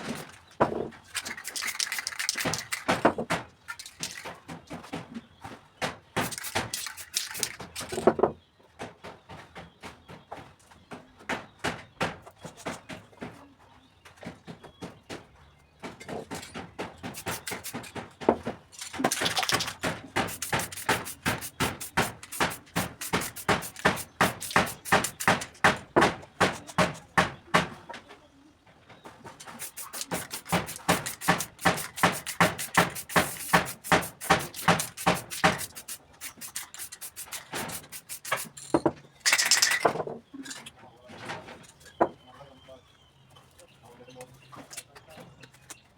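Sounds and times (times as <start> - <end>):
spray can rattling: 0.0 - 0.4, 1.1 - 3.1, 3.7 - 4.3, 6.2 - 8.0, 17.1 - 18.0, 18.7 - 25.7, 29.4 - 39.9.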